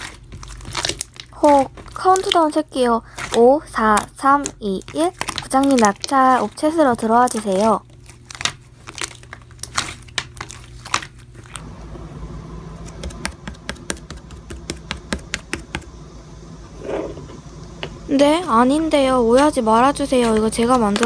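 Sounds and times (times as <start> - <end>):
faint low hum: 11.4 - 21.0
sharp clicks and taps: 12.8 - 15.9.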